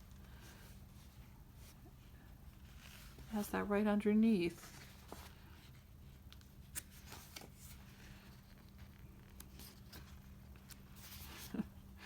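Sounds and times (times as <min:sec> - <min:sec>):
paper rustling: 0:04.6 - 0:11.7.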